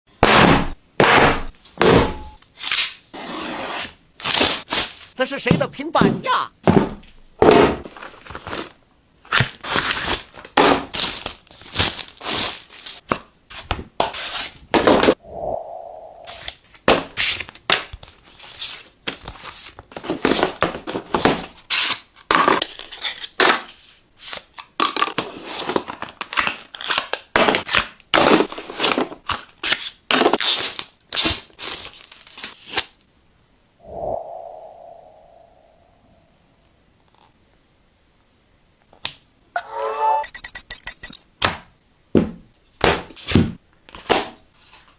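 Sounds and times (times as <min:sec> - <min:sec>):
paper tearing and crinkling: 0:02.6 - 0:05.2, 0:07.9 - 0:13.0, 0:25.4 - 0:33.0.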